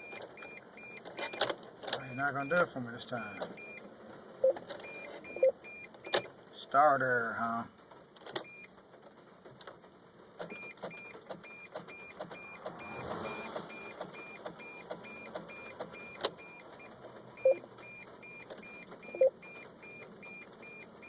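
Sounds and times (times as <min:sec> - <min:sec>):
dashboard warning chime beeping: 0:00.0 - 0:01.4, 0:02.0 - 0:06.3, 0:08.4 - 0:08.7, 0:10.5 - 0:21.0.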